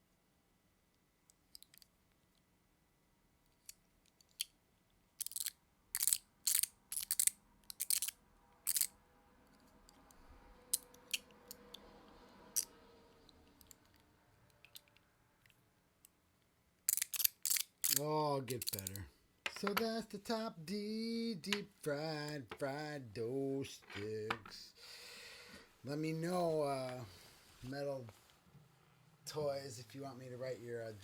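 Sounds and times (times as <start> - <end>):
metal tops clicking and clacking: 16.9 - 20.0
faint steady hum: 18.0 - 31.0.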